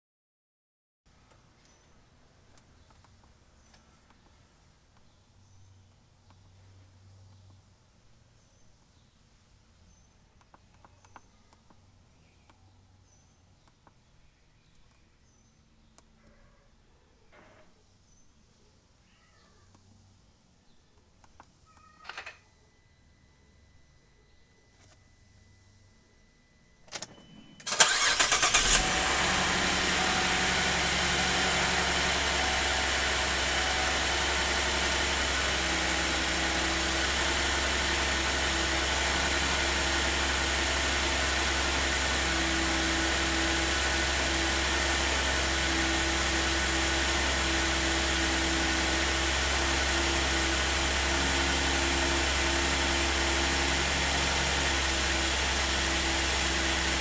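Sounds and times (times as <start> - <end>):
car engine cranking and idling: 27.7 - 57.0.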